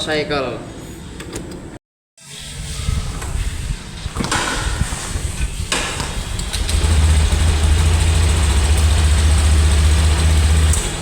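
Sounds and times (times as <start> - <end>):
motorcycle engine starting and idling: 5.9 - 11.0.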